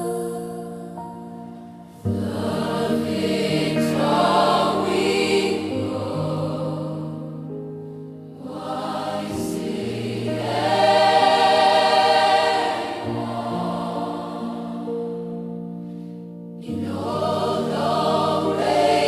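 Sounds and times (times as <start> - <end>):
soft sustained backing music: 0.0 - 19.0
gospel choir singing: 2.0 - 7.5, 8.3 - 15.4, 16.6 - 19.0.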